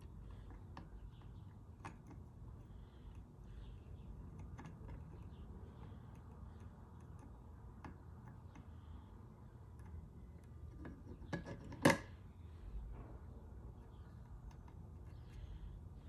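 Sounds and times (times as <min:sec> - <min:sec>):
small clicks of hand tools: 0:00.3 - 0:02.3.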